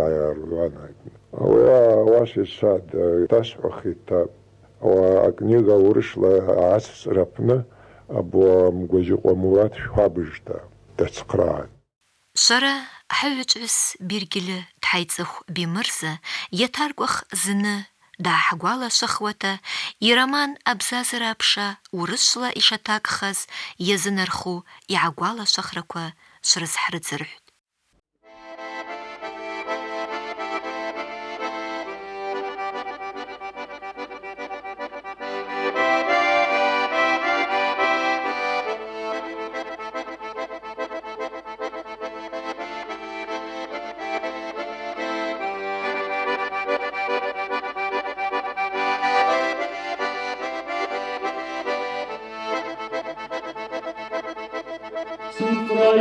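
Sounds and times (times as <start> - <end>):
accordion folk music: 28.3 - 56.0.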